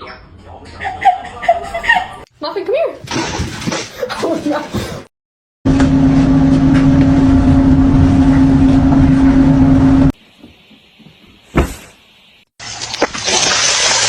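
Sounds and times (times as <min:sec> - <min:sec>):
steady motor hum: 0:05.7 - 0:10.1
thump: 0:11.5 - 0:12.0.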